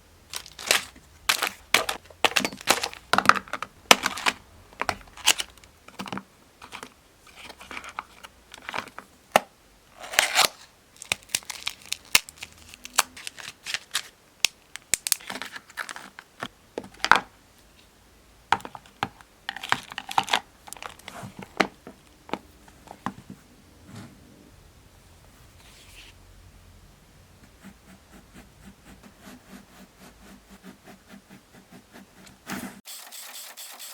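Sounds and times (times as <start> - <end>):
paper crinkling and tearing: 0.3 - 3.1, 10.0 - 14.1.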